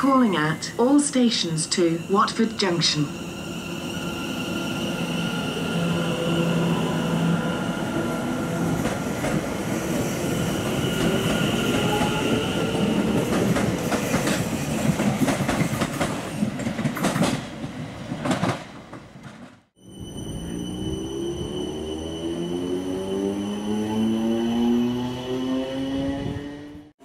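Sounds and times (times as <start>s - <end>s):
train wheels clicking over rail joints: 13.1s - 19.6s.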